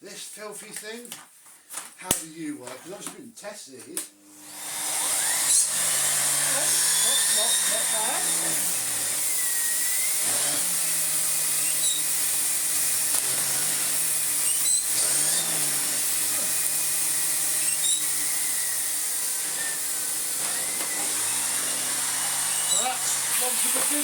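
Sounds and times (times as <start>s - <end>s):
vacuum cleaner with turbo brush whirring: 4.3s - 24.0s.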